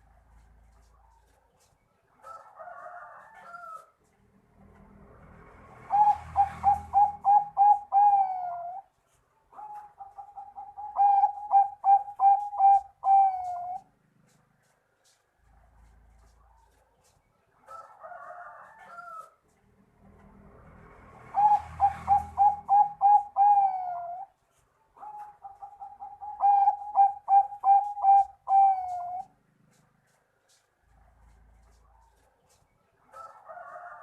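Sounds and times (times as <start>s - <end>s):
dove cooing song: 5.7s - 8.9s, 9.5s - 14.4s, 21.1s - 24.4s, 25.0s - 29.8s
warbled bird call: 5.9s - 8.9s, 9.6s - 13.9s, 21.3s - 24.3s, 25.0s - 29.3s.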